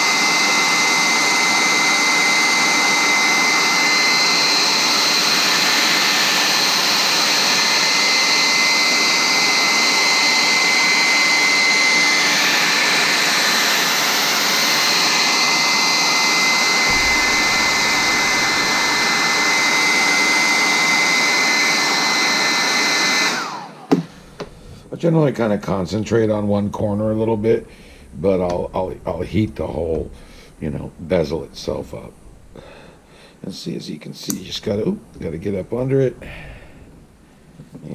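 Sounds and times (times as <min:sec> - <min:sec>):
hairdryer blowing with motor whine: 0:00.0 - 0:24.9.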